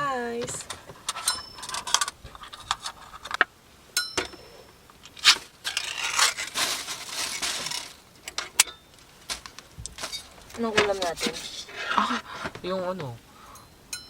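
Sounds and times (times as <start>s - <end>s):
utensils clinking and scraping pot: 0.4s - 12.6s
short ringing clink: 1.3s - 1.8s, 4.0s - 4.7s, 13.6s - 14.0s
rustling rice: 4.4s - 12.9s.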